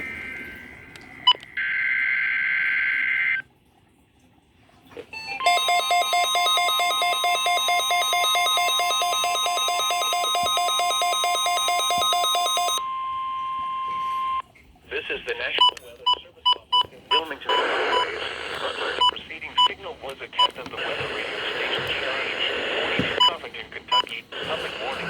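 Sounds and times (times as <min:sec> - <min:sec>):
alert radio alarm beeping: 0:05.2 - 0:14.4, 0:15.6 - 0:18.2
steady warning alarm tone: 0:05.2 - 0:14.4.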